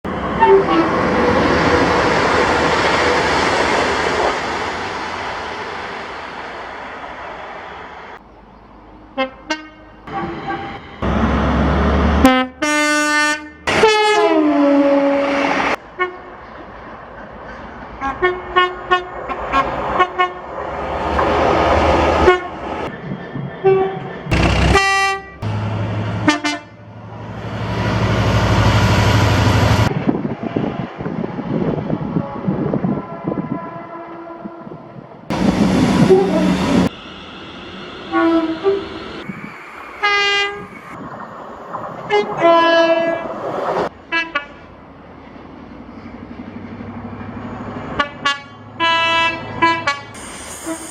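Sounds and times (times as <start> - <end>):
train rumble: 0.0 - 50.9
train horn blasts: 0.4 - 1.0, 9.2 - 11.3, 12.2 - 16.3, 18.0 - 20.4, 22.2 - 22.6, 23.6 - 26.9, 32.2 - 34.8, 36.0 - 36.6, 37.6 - 38.9, 42.1 - 43.3, 44.1 - 44.6, 48.0 - 50.9.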